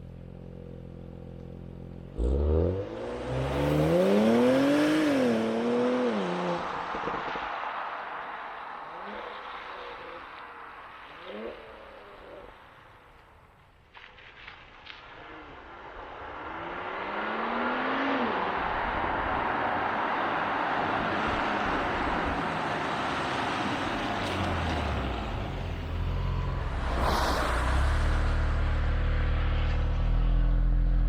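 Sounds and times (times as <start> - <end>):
car engine revving: 1.4 - 7.2, 24.4 - 31.0.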